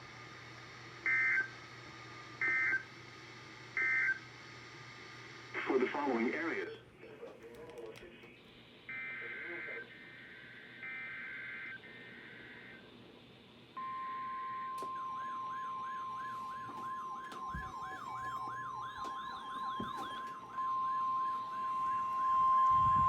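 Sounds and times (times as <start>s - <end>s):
warbling siren-like alarm: 1.0s - 1.6s, 2.4s - 2.9s, 3.7s - 4.3s, 13.8s - 23.0s
screeching data tones: 13.8s - 23.0s.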